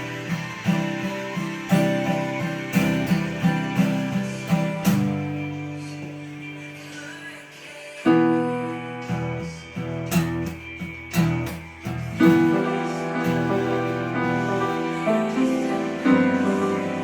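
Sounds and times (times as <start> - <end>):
soft instrumental chords: 8.1 - 17.0.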